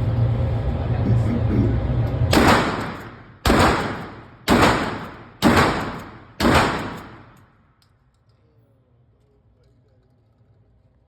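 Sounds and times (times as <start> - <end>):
shotgun blasts: 2.3 - 7.6.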